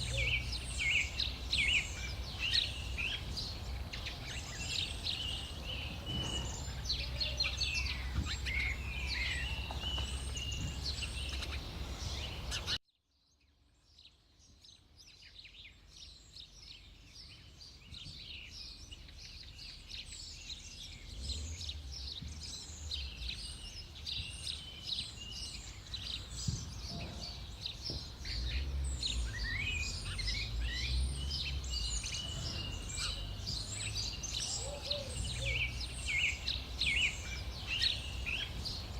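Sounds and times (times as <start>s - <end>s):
birds chirping and twittering: 0.0s - 38.9s.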